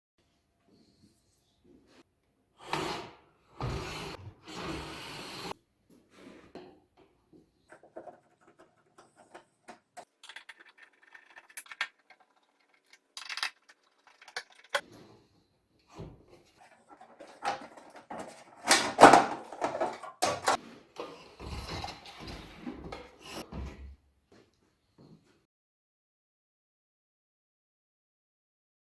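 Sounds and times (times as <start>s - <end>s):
scraping in a workshop: 14.7s - 24.0s.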